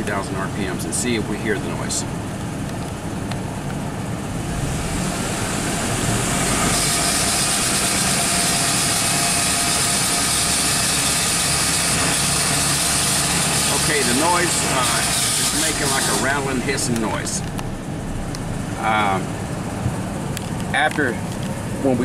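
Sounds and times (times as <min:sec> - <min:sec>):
pickup engine revving: 0:02.1 - 0:22.0.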